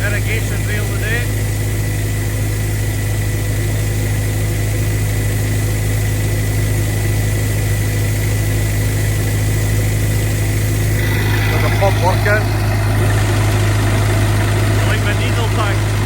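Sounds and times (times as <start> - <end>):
high whine: 0.0 - 5.1, 10.2 - 16.0
air compressor engine running: 0.0 - 16.0.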